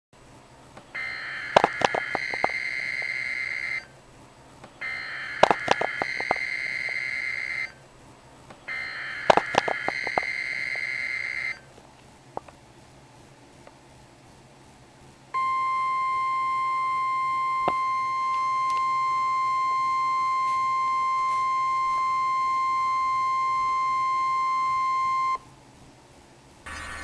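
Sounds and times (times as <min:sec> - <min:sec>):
sharp clicks: 0:00.8 - 0:03.2, 0:04.6 - 0:07.0, 0:08.7 - 0:10.4
shrill digital data tones: 0:01.0 - 0:03.9, 0:04.8 - 0:07.8, 0:08.7 - 0:11.6, 0:15.4 - 0:25.4.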